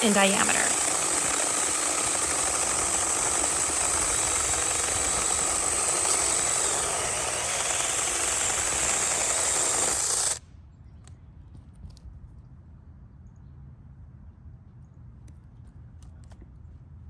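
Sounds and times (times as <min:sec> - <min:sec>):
mini chainsaw cutting branch: 0:00.0 - 0:10.4.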